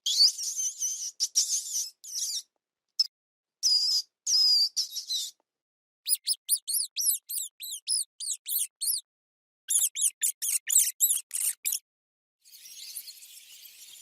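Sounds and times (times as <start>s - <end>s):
parrot squawking: 6.1s - 9.0s
parrot chirping: 6.1s - 9.1s, 9.7s - 11.8s.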